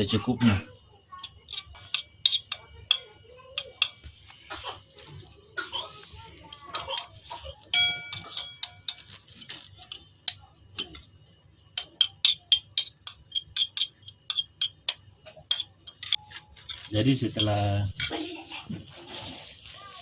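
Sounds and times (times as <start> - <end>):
spoon clinking against container: 1.2 - 4.2, 6.5 - 11.1, 11.7 - 18.2.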